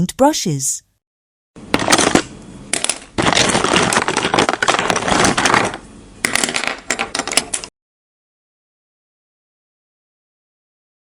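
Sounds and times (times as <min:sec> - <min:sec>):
objects clattering and rustling: 0:01.7 - 0:07.7.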